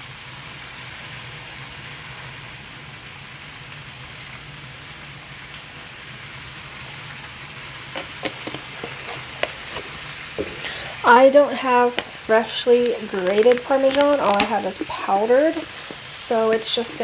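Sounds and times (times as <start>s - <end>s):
sauce sizzling in a skillet: 5.9s - 17.0s.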